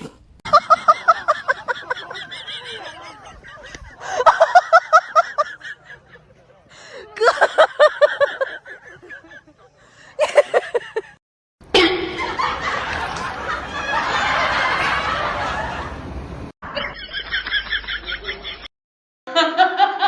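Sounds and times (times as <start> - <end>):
snickering giggling laughter: 0.0 - 6.4, 7.1 - 11.2, 12.1 - 16.0.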